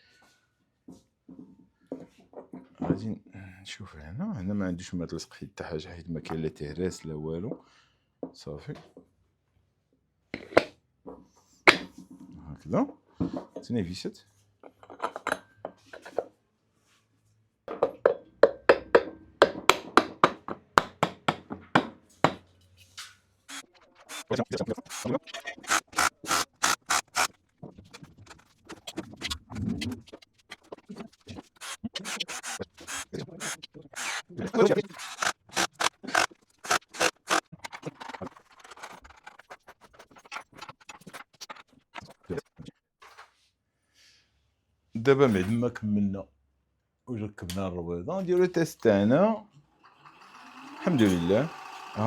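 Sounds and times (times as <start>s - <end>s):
tools and metal parts clicking: 23.5s - 27.3s, 31.4s - 39.4s.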